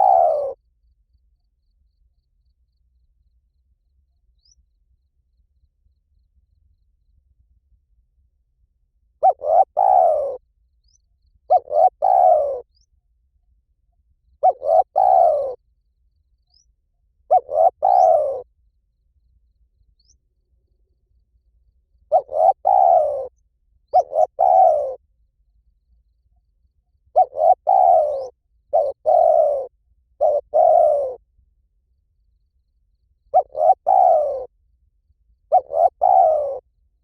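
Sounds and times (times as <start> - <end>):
dove cooing: 0.0 - 0.6, 9.2 - 10.4, 11.5 - 12.9, 14.4 - 15.6, 17.3 - 18.5, 22.1 - 25.0, 27.1 - 31.2, 33.3 - 34.5, 35.5 - 36.6.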